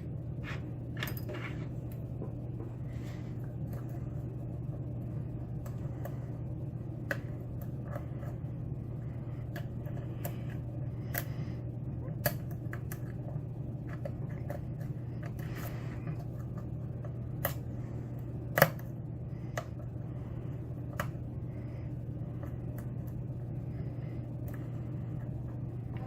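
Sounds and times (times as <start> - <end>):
low hum: 0.0 - 26.0.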